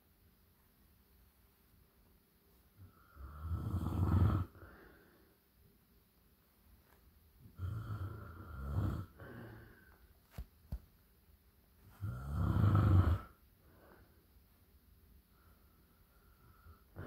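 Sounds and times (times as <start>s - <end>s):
loud rattling snores: 3.4s - 4.5s, 12.0s - 13.3s.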